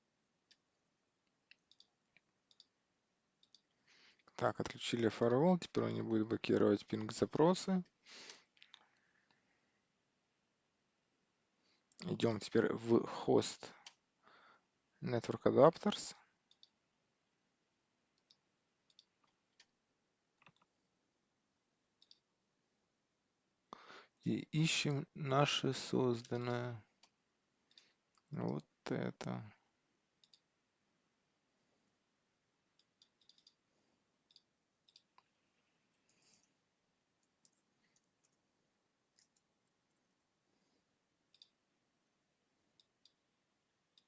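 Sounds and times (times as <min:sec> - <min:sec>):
computer mouse clicks: 0:00.5 - 0:02.8, 0:03.4 - 0:04.4, 0:08.5 - 0:09.4, 0:16.5 - 0:16.8, 0:18.1 - 0:19.8, 0:20.4 - 0:20.8, 0:22.0 - 0:22.3, 0:27.0 - 0:28.6, 0:30.2 - 0:30.5, 0:32.7 - 0:33.6, 0:34.2 - 0:36.6, 0:37.2 - 0:38.4, 0:39.1 - 0:40.1, 0:41.3 - 0:41.6.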